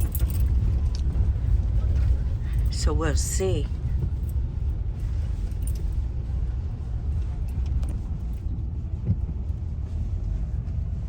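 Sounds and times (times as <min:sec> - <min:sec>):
car driving rumble from inside: 0:00.0 - 0:11.0.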